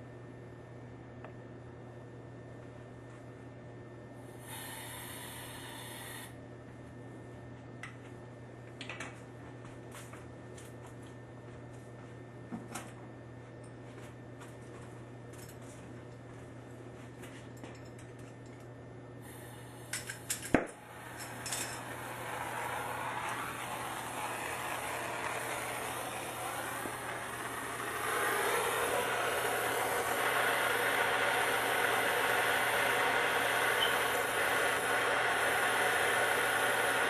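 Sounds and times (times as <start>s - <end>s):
torch flame hissing: 4.4s - 6.4s, 19.2s - 37.0s.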